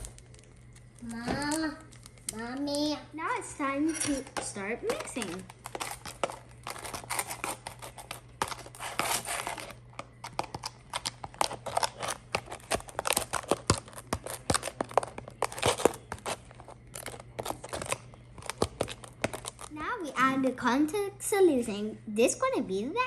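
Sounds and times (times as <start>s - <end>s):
wet scraping and squishing: 3.9s - 19.8s.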